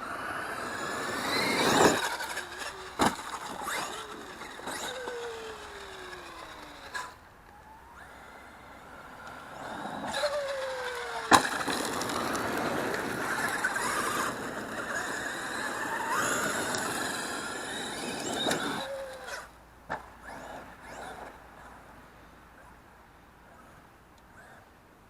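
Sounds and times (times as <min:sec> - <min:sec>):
electric motor whine: 0:00.0 - 0:19.5
tyre noise: 0:00.6 - 0:08.2, 0:09.4 - 0:21.8.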